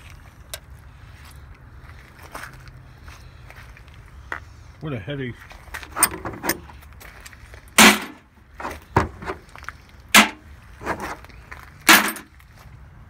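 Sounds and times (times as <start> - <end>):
tools knocking and clanking: 5.8 - 6.7, 7.8 - 9.4, 10.2 - 11.2, 11.8 - 12.3.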